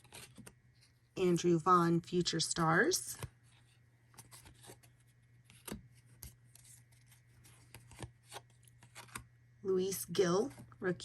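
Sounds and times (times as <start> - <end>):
trading cards rustling: 0.0 - 1.1, 2.3 - 9.3.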